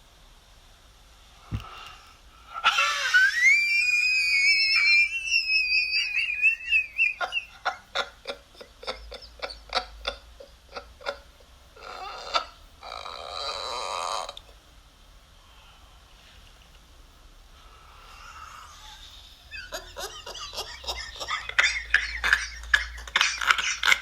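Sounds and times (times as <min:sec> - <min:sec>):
demonic laughter: 0:02.5 - 0:14.5, 0:18.7 - 0:24.0.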